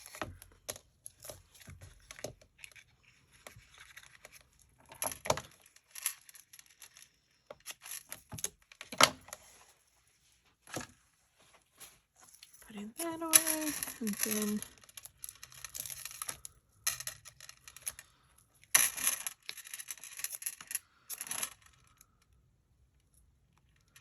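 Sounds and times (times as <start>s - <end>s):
card and paper rustling: 1.2s - 5.1s, 10.6s - 14.8s.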